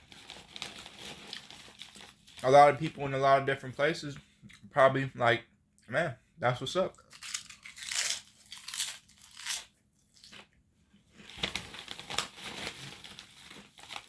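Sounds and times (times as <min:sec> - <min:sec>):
person chewing crunchy food: 0:07.0 - 0:10.5.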